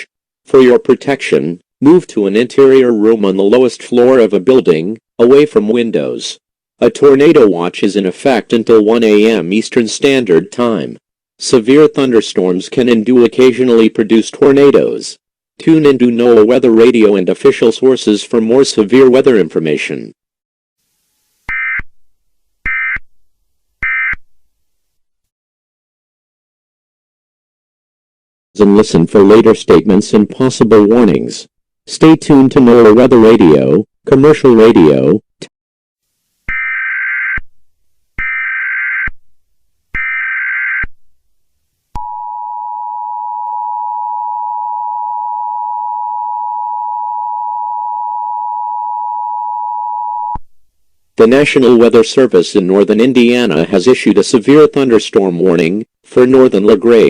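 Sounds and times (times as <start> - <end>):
long steady alert tone: 42.0 - 50.4.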